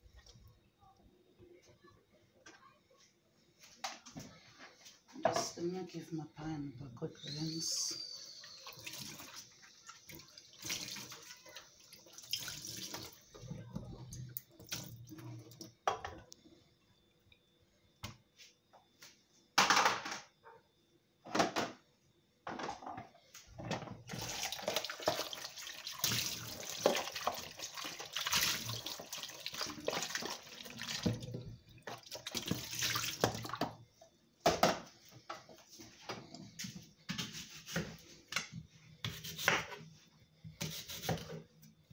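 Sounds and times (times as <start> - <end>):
tap water rinsing a pan: 8.3 - 16.3, 23.6 - 33.8.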